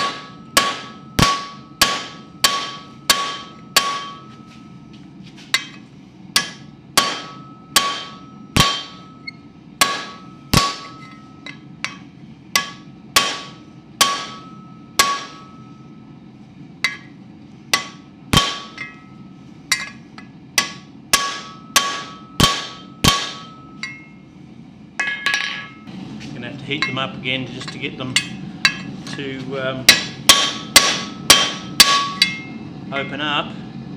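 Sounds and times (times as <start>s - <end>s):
hammer striking hot rivet: 0.0s - 4.3s, 6.4s - 15.6s, 16.8s - 17.2s, 17.8s - 19.1s, 19.7s - 24.0s, 29.9s - 32.5s.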